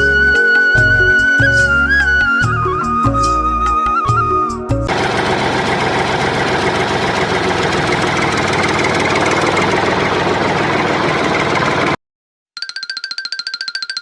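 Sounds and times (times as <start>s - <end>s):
small engine chugging: 4.9s - 12.0s.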